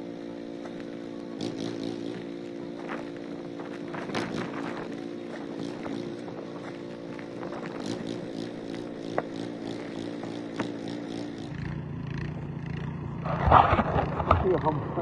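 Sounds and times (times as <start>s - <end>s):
engine humming: 0.0s - 15.0s
short clicks and scrapes: 13.2s - 14.5s.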